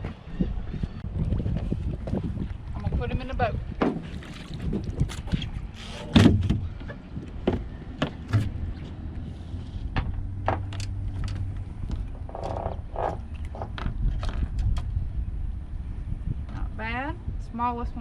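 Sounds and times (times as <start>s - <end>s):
knocks and clatter on a boat: 0.0s - 8.8s, 9.8s - 15.0s.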